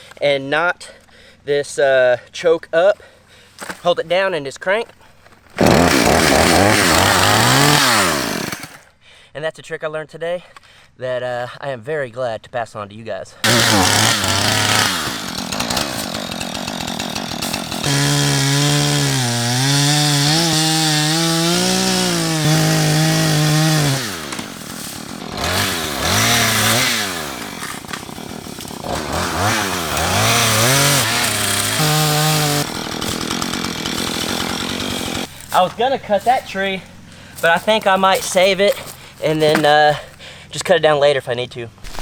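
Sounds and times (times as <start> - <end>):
chainsaw revving: 5.6 - 8.8, 13.4 - 40.2.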